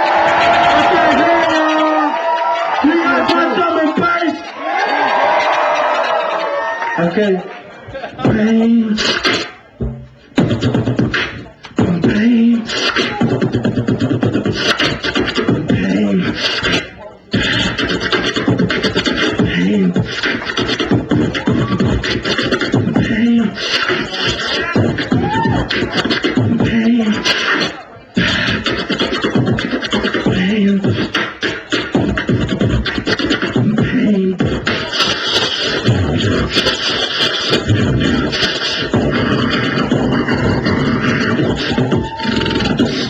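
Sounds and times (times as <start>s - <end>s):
person beatboxing: 0.0s - 4.6s, 8.1s - 43.0s
hummed bass notes: 9.8s - 16.4s.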